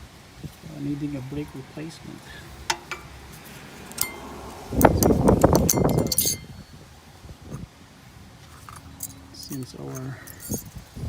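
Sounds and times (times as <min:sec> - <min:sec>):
metallic clink: 0:02.7 - 0:03.1, 0:03.9 - 0:06.7, 0:08.6 - 0:10.8
metal parts clattering: 0:05.0 - 0:06.5, 0:08.5 - 0:10.8.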